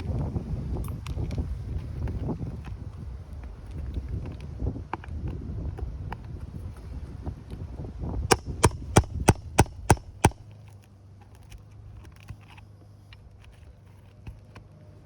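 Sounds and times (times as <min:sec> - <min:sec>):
hammer striking: 0:08.3 - 0:10.4.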